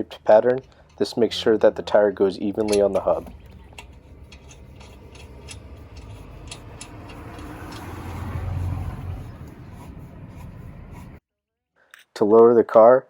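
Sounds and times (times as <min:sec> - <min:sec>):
car passing: 0:00.0 - 0:11.2
metallic clicks of lug nuts: 0:00.1 - 0:01.2, 0:02.5 - 0:08.3.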